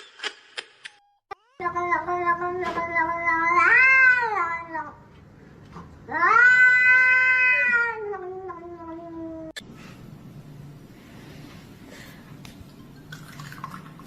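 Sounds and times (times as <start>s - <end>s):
cat yowling: 6.1s - 9.5s.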